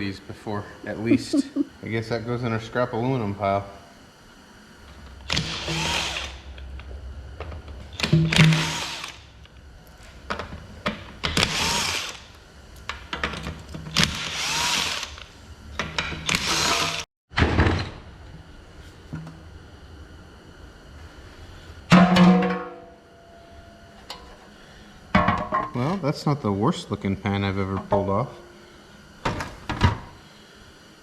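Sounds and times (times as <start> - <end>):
power drill spinning out bolts: 5.1 - 6.8, 7.9 - 9.3, 11.2 - 12.4, 13.2 - 15.4, 16.0 - 17.0.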